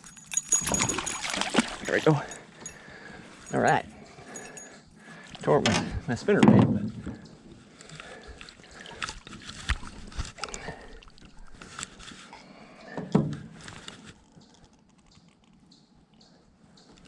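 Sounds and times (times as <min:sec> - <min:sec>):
knocks and clatter in boat: 0:05.6 - 0:07.2.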